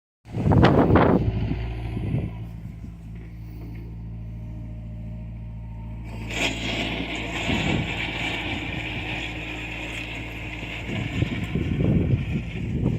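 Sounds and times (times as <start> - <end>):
diesel engine running: 0.3 - 12.9.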